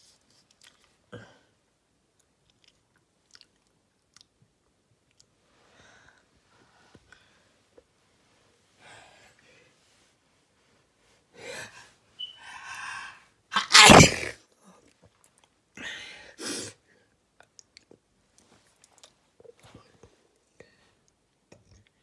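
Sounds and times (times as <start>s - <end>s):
person gasping before sneeze: 13.6s - 14.3s
person sneezing: 13.6s - 14.3s.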